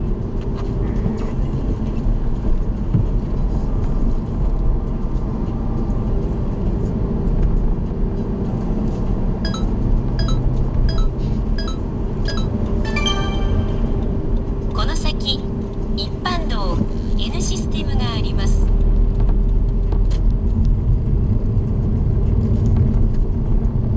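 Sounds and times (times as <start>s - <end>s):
engine and tyre rumble: 0.0s - 9.3s, 16.7s - 23.9s.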